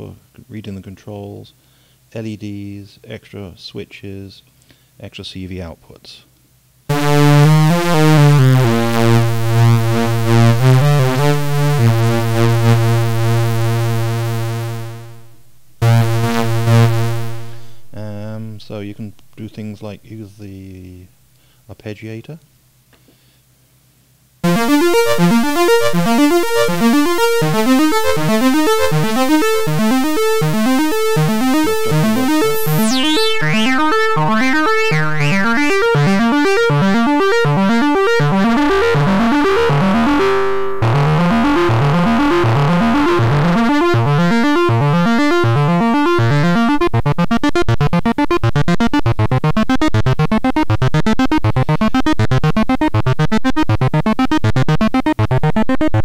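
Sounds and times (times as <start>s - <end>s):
arpeggiated synthesizer sequence: 6.9s - 19.8s, 24.4s - 56.0s.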